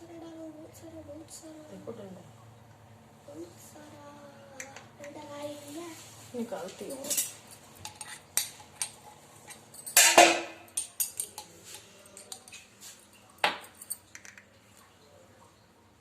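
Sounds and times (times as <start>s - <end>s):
spoon clinking against bowl: 7.0s - 14.5s.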